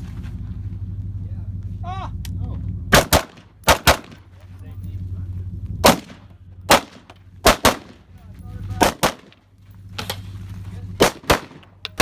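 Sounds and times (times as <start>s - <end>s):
low steady hum: 0.0s - 12.0s
rifle gunshots: 2.9s - 4.3s, 5.8s - 8.0s, 8.8s - 9.4s, 11.0s - 11.8s.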